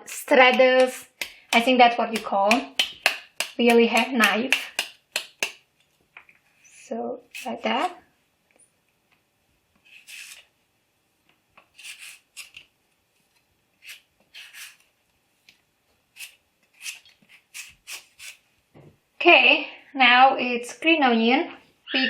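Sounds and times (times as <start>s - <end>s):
knife scraping mango: 9.8s - 10.5s, 11.7s - 12.6s, 13.8s - 14.9s, 16.1s - 18.4s.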